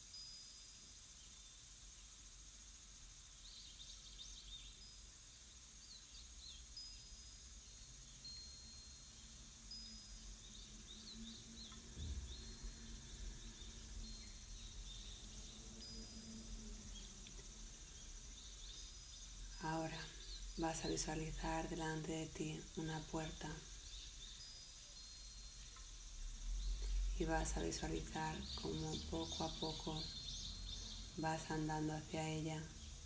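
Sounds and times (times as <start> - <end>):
small birds chirping: 3.1 - 33.0
low steady rumble: 26.0 - 33.0.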